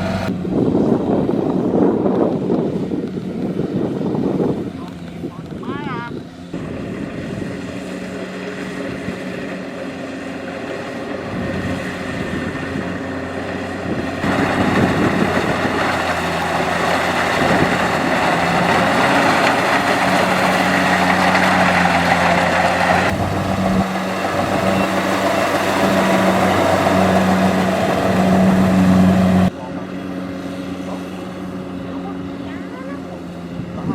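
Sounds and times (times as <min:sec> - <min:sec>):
combine harvester running: 0:00.0 - 0:33.9.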